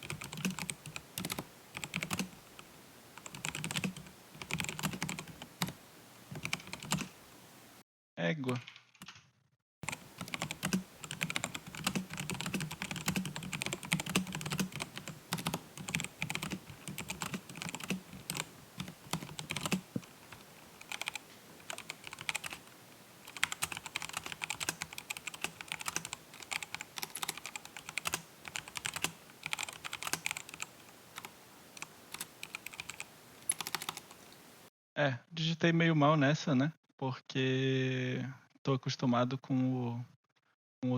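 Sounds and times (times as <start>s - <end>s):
fast typing on mechanical keyboard: 0.0s - 2.4s, 3.2s - 5.8s, 6.4s - 7.1s, 9.8s - 22.6s, 23.2s - 34.2s.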